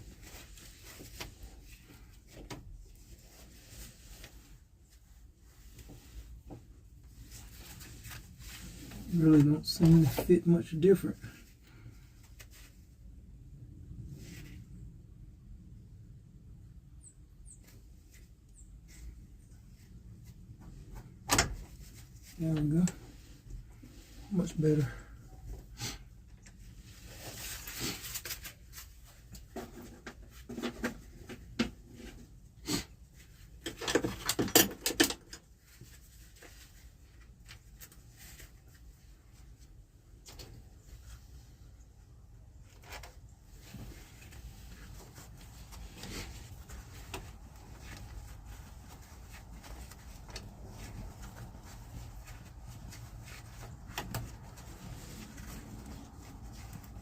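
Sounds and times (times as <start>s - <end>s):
clicks and knocks of tools: 33.6s - 35.4s.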